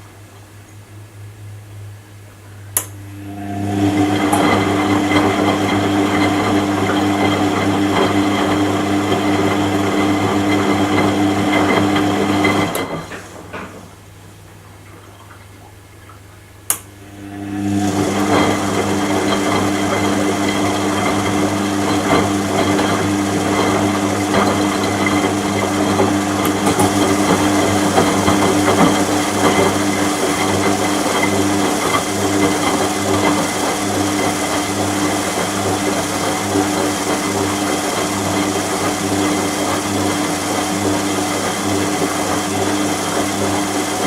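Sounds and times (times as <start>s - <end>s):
washing machine motor turning drum: 0.0s - 44.0s
sharp click: 2.8s - 3.0s, 16.7s - 16.9s.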